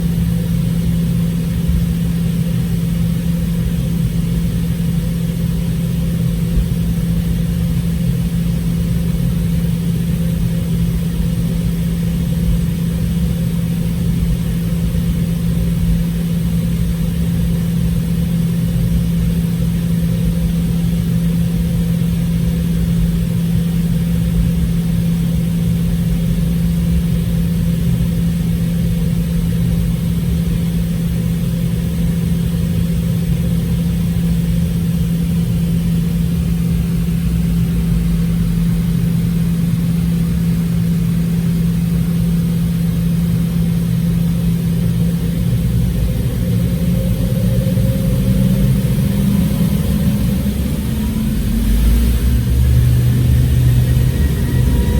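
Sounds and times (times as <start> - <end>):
aircraft cabin drone: 0.0 - 54.9.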